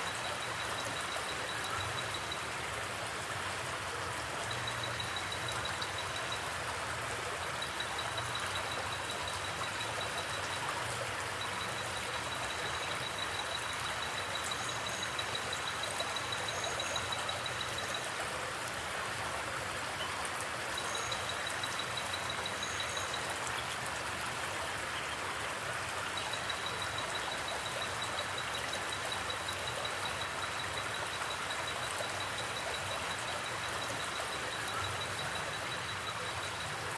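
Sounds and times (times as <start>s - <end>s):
cricket trilling: 0.0s - 2.5s, 4.5s - 6.6s, 7.4s - 18.1s, 20.8s - 23.4s, 26.1s - 36.9s
river water rushing: 0.0s - 36.9s.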